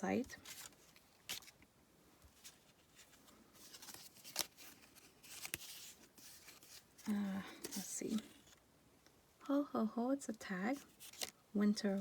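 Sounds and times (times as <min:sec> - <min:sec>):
cardstock pieces rustling: 0:00.1 - 0:01.6, 0:02.3 - 0:08.6, 0:10.7 - 0:12.0.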